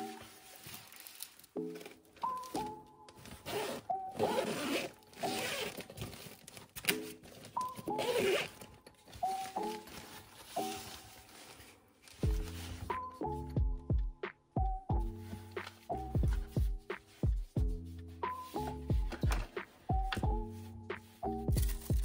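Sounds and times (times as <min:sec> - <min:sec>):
packaging rustling and tearing: 0:00.0 - 0:13.1, 0:21.5 - 0:22.0
soft background music: 0:00.0 - 0:22.0.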